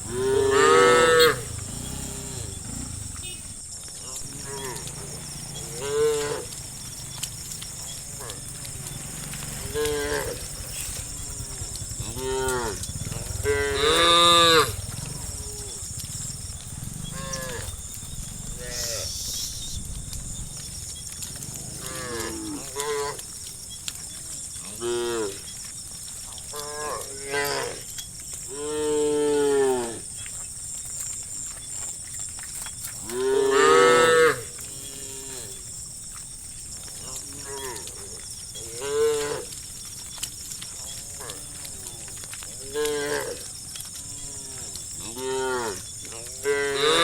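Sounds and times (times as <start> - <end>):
cattle mooing: 0.0 - 3.6, 4.2 - 19.2, 21.4 - 23.3, 24.6 - 25.4, 26.5 - 27.8, 33.0 - 35.7, 36.9 - 39.6, 40.7 - 47.0.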